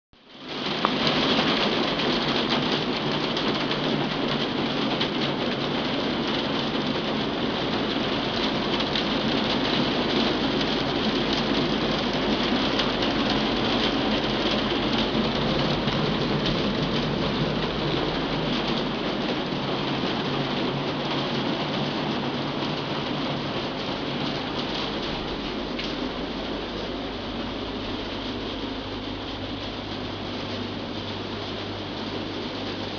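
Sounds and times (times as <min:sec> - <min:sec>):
hail clattering on glass roof: 0:00.4 - 0:26.1.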